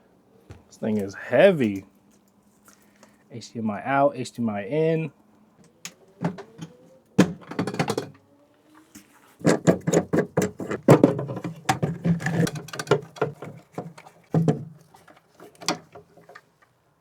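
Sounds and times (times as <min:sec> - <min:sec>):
small clicks and knocks: 0:09.4 - 0:16.8.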